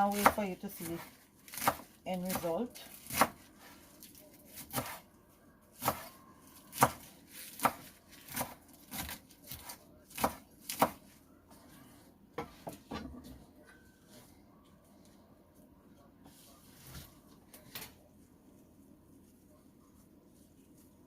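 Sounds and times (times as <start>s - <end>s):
knife chopping kale: 0.0s - 5.0s, 5.7s - 11.2s.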